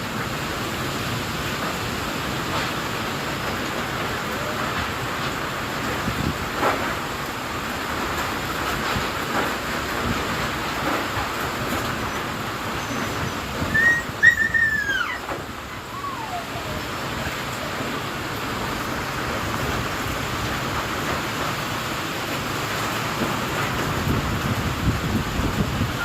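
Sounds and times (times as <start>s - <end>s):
heavy rain: 0.0s - 26.0s
strong wind: 0.0s - 26.0s
whistle-like cry: 12.8s - 16.8s.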